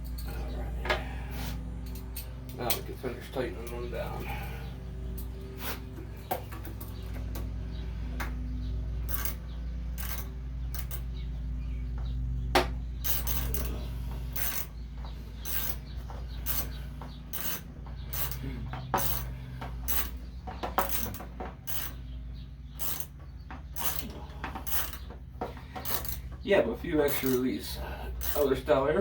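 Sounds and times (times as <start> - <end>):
steady low hum: 0.0 - 29.0
ratchet clicking: 9.0 - 11.1, 13.0 - 14.7, 15.4 - 20.2, 20.8 - 22.0, 22.8 - 25.1, 25.8 - 26.3, 27.1 - 27.5, 28.2 - 28.6.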